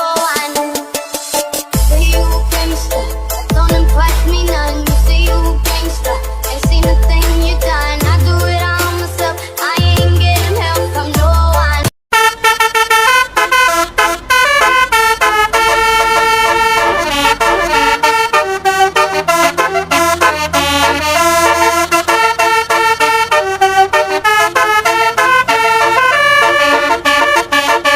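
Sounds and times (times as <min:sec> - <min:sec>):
vehicle horns playing melody: 0:12.1 - 0:27.9.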